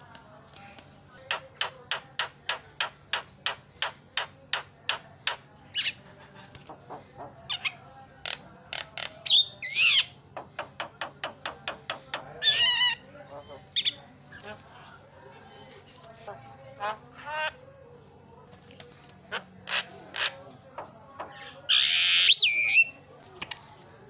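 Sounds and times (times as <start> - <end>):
bird squawks: 19.3 - 20.5.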